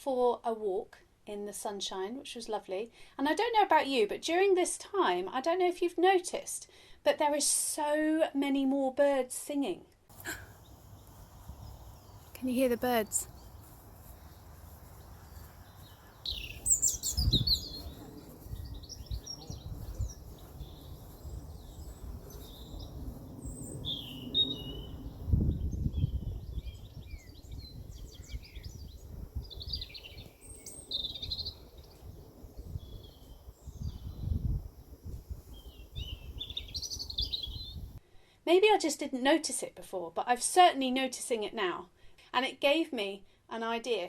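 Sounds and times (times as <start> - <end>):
songbirds singing and chirping: 10.1 - 38.0.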